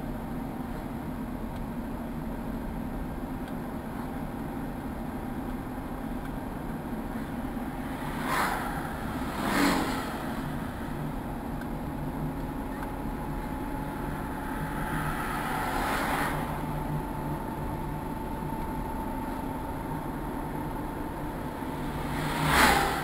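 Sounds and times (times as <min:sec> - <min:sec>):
low traffic hum: 0:00.0 - 0:23.0
vehicles passing by with whoosh: 0:02.2 - 0:23.0.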